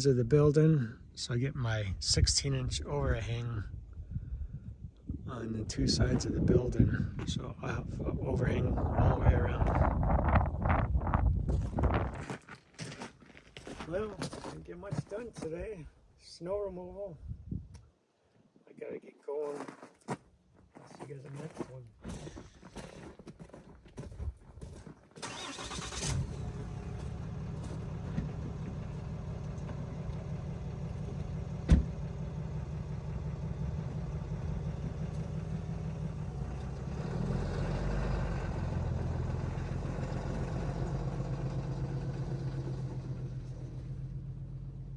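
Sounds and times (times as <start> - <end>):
vehicle engine starting and idling: 25.2 - 44.9.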